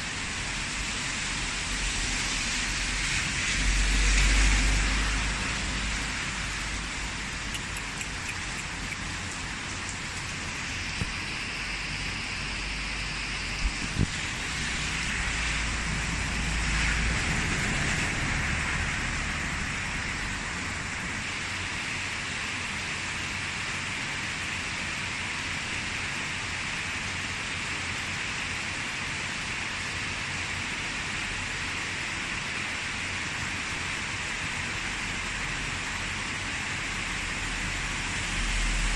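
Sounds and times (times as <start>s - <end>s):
rain pattering on surfaces: 0.1s - 11.2s.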